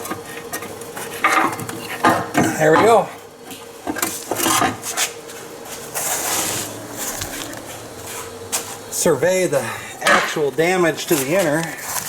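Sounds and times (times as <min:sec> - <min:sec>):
scraping rub: 0:04.4 - 0:08.9.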